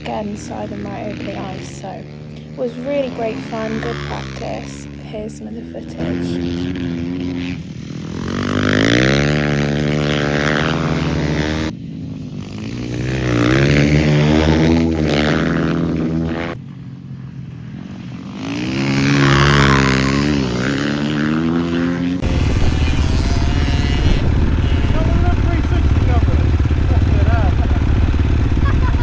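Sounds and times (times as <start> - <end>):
dirt bike engine accelerating: 0.0 - 29.0.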